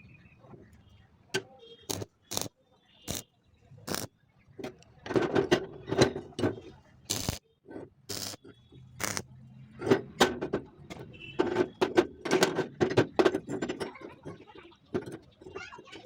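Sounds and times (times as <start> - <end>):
sharp knocks and clicks: 3.9 - 15.3.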